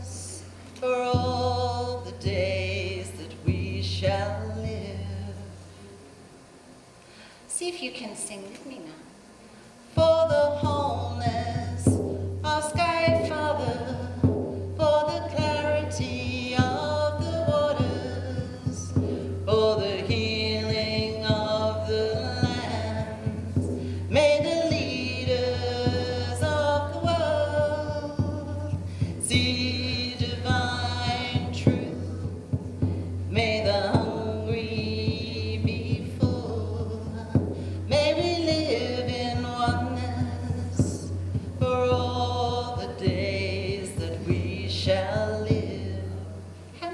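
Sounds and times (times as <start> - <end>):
music with singing voices: 9.9 - 46.9.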